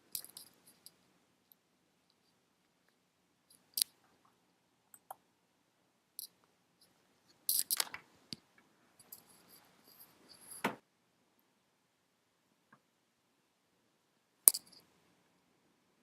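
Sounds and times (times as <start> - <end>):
computer clicks and taps: 4.9 - 5.2, 14.5 - 14.8.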